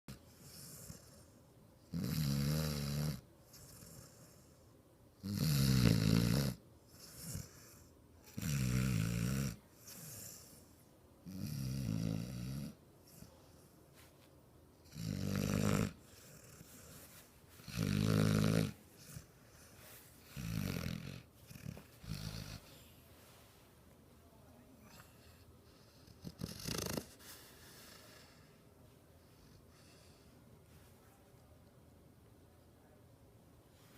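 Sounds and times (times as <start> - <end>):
puppy snoring: 0.1 - 13.8, 14.8 - 23.0, 24.8 - 28.6
quiet dog breaths: 15.8 - 17.7, 18.6 - 20.4, 21.2 - 31.6.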